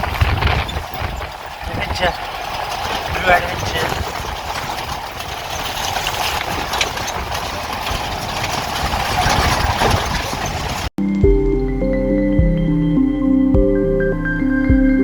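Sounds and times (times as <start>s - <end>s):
vehicle engine rattling and rumbling: 0.0s - 11.0s
soft synth music: 11.0s - 15.0s.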